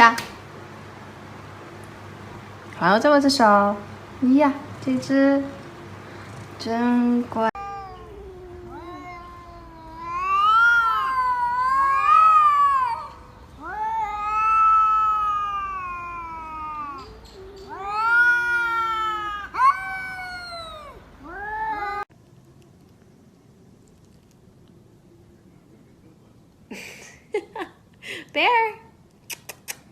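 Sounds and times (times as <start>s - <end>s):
cat yowling: 7.5s - 22.1s.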